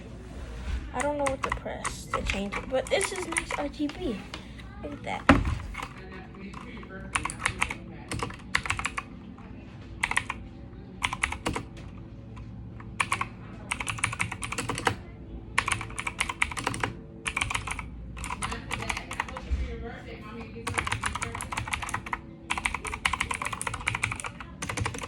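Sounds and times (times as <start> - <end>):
mechanical keyboard typing clicks: 5.3 - 9.0, 10.0 - 10.4, 11.0 - 11.7, 12.9 - 15.0, 15.6 - 19.4, 20.6 - 25.0.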